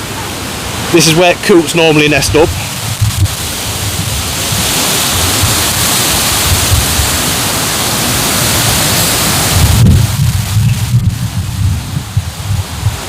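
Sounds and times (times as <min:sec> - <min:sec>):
low wind buffeting: 0:00.0 - 0:13.0
wind rushing hiss: 0:00.0 - 0:13.0.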